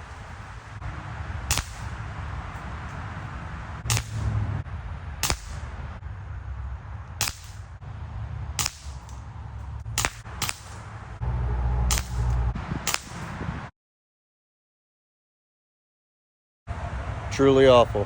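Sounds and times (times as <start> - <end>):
strong wind buffeting microphone: 0.0 - 13.7
air pistol shots: 1.5 - 2.0, 3.8 - 4.4, 5.2 - 5.7, 7.2 - 7.7, 8.6 - 9.2, 10.0 - 10.9, 11.9 - 13.4.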